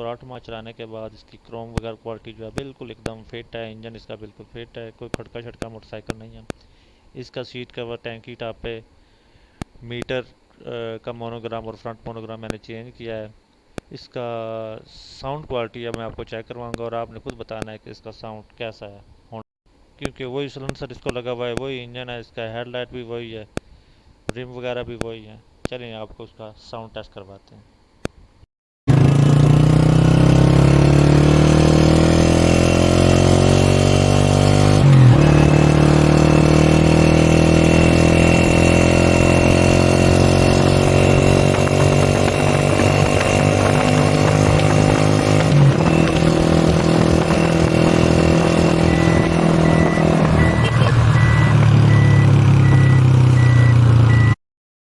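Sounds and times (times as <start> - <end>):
motorcycle engine running: 28.9 - 54.3
high beeping: 45.7 - 54.4.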